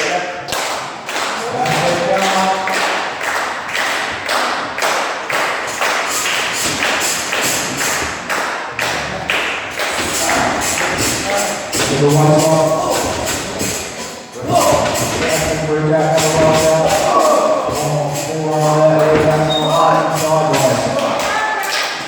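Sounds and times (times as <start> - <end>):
audience clapping in rhythm: 0.0 - 22.0.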